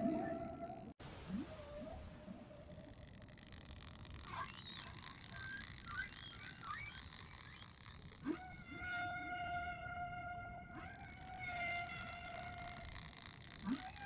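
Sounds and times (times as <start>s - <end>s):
wavering squeaks: 0.0s - 1.0s, 1.8s - 14.0s
rising whale call: 8.2s - 14.0s.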